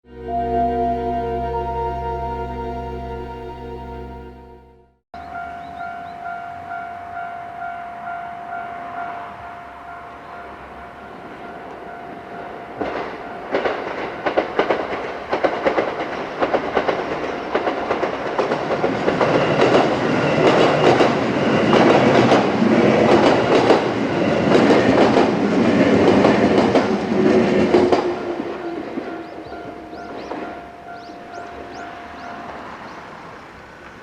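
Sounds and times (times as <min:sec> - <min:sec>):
crossing warning bell ringing: 0:00.1 - 0:14.8, 0:16.8 - 0:33.8
train wheels clattering over rail joints: 0:12.8 - 0:28.6.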